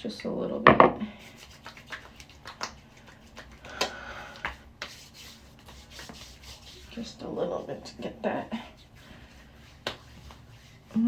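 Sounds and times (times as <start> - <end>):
oil rubbed on skin: 1.2 - 11.0.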